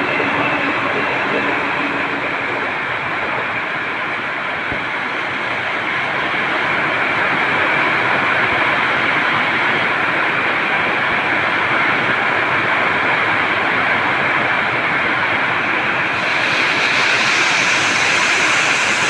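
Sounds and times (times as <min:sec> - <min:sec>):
train wheels rushing: 0:13.4 - 0:19.0.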